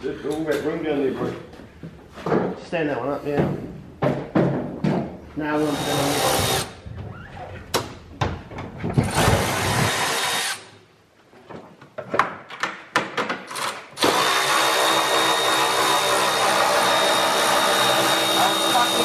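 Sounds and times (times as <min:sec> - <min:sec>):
power tool running: 0:05.6 - 0:06.8, 0:09.1 - 0:10.7, 0:14.0 - 0:19.0
tools clicking and knocking: 0:11.5 - 0:13.9.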